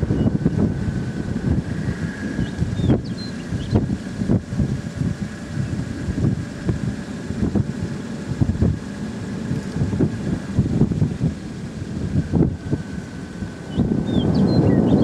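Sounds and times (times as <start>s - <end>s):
faint steady high whine: 0.0s - 15.0s
wind buffeting microphone: 0.0s - 15.0s.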